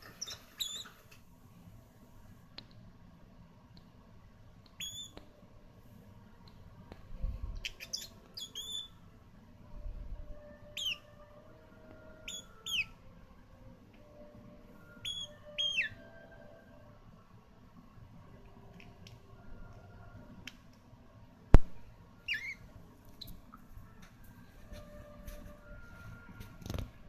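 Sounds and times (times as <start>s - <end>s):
parrot chirping: 0.0s - 0.9s, 4.8s - 5.2s, 7.6s - 8.9s, 10.8s - 11.1s, 12.3s - 12.9s, 15.0s - 16.0s, 22.3s - 22.6s.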